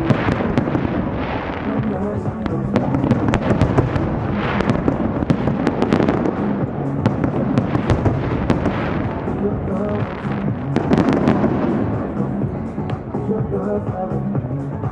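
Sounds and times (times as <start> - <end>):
fireworks bangs and crackles: 0.0 - 14.0
continuous low rumble: 0.0 - 14.9.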